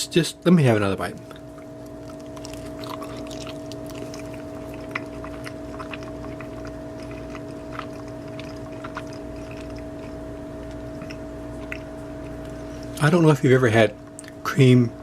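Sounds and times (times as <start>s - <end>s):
steady electrical hum: 0.0s - 15.0s
chewing crunchy pastry: 1.2s - 13.1s.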